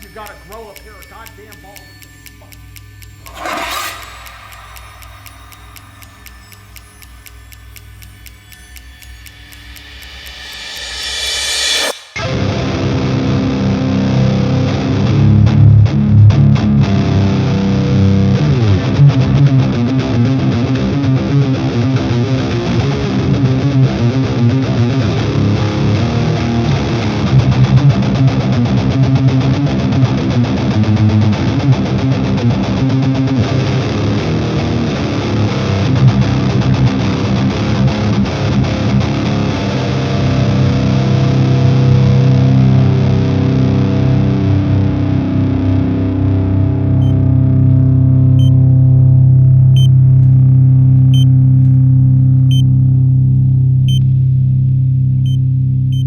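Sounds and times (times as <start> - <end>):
distorted electric guitar music: 0.0 - 56.0.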